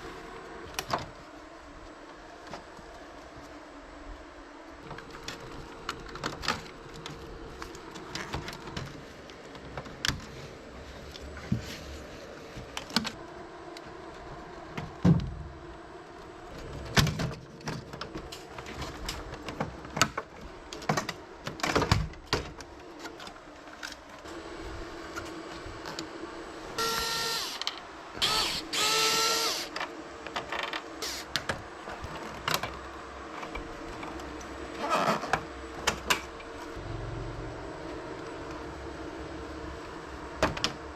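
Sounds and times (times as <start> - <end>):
short whines: 26.8 - 29.7.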